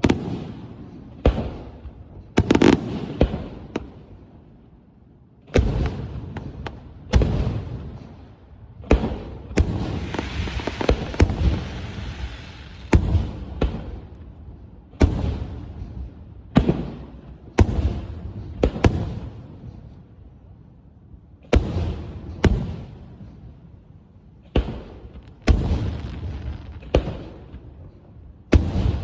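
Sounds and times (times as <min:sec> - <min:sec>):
fireworks banging with echo: 0:00.0 - 0:04.1, 0:08.8 - 0:20.0, 0:21.4 - 0:23.5, 0:24.4 - 0:27.9, 0:28.5 - 0:29.0.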